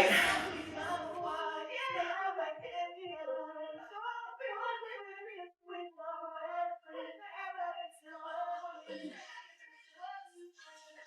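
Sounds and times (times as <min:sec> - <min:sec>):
high voice singing: 0:00.0 - 0:03.5.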